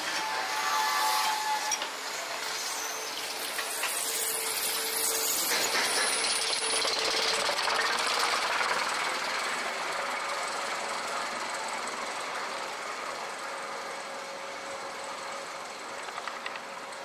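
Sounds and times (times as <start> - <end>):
roller coaster train rattling: 0.0 - 17.0.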